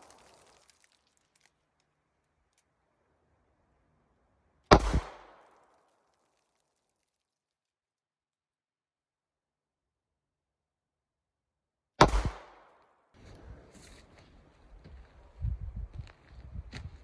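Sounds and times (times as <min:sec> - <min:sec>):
gunshot echo: 0:04.7 - 0:05.8, 0:12.0 - 0:13.4
pistol shot: 0:04.7 - 0:05.8, 0:12.0 - 0:12.8.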